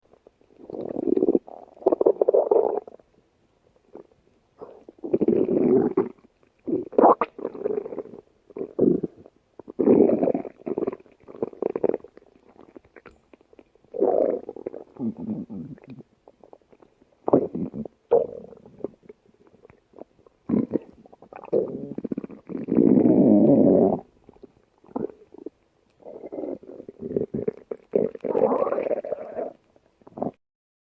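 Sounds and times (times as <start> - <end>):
stomach growling: 0.1 - 3.0, 3.9 - 30.4.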